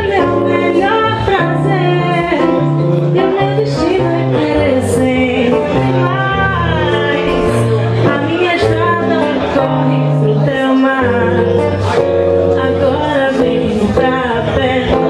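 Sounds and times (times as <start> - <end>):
acoustic guitar: 0.0 - 15.0
woman singing: 0.0 - 15.0.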